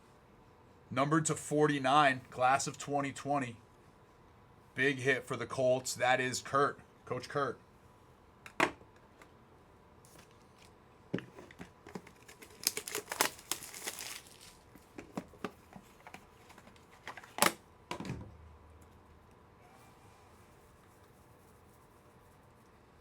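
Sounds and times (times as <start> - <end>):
wrapper crinkling and tearing: 11.9 - 14.9.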